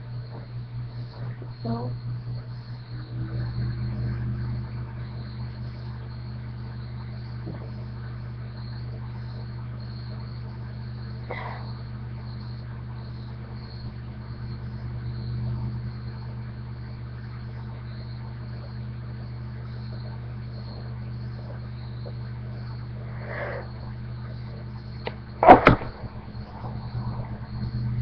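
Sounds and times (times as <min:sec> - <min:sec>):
faint high-pitched whine: 0:00.0 - 0:28.0
low electrical hum: 0:00.0 - 0:28.0.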